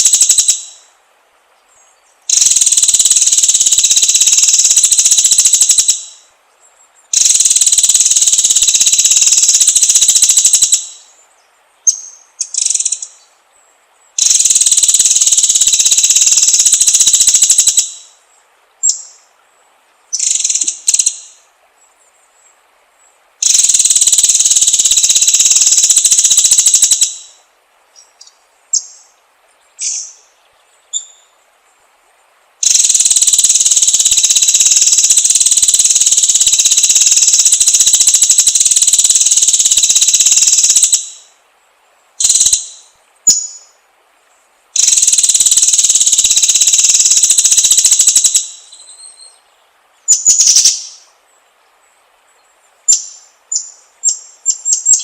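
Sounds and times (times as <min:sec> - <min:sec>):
bird buzzing trills: 0:00.0 - 0:00.9, 0:14.1 - 0:18.2, 0:23.4 - 0:27.4, 0:32.6 - 0:41.3, 0:44.8 - 0:49.4
bird chirps: 0:00.0 - 0:00.9, 0:01.6 - 0:18.2, 0:18.8 - 0:19.3, 0:20.1 - 0:31.4, 0:32.6 - 0:41.4, 0:42.2 - 0:43.8, 0:44.8 - 0:51.2, 0:52.3 - 0:55.0.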